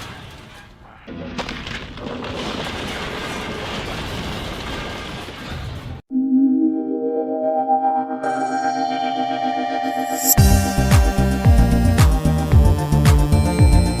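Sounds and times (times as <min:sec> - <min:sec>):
synthesizer music: 0:06.1 - 0:14.0.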